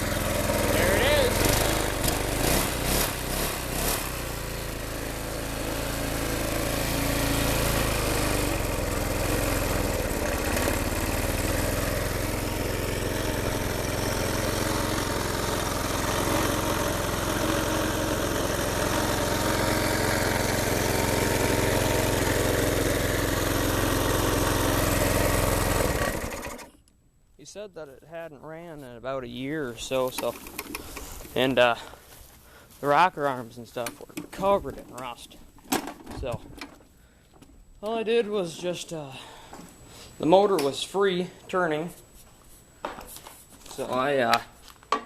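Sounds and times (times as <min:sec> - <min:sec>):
lawn mower engine running: 0:00.0 - 0:26.8, 0:29.7 - 0:41.2.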